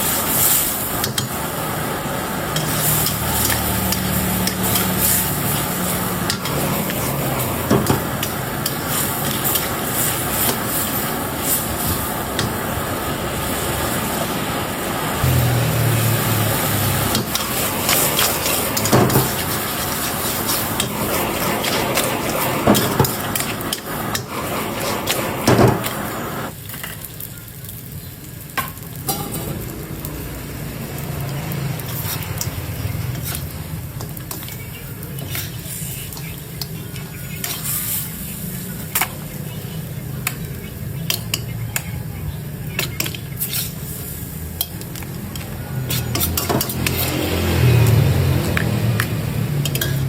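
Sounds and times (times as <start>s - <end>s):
food sizzling in a pan: 0.0s - 50.0s
spatula scraping a pan: 2.5s - 11.7s, 16.7s - 26.0s, 31.8s - 33.6s, 37.4s - 38.2s, 42.8s - 47.6s.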